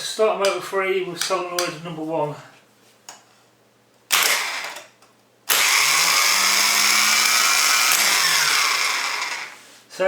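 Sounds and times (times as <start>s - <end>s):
starter motor whirring: 4.1s - 4.8s, 5.5s - 9.6s.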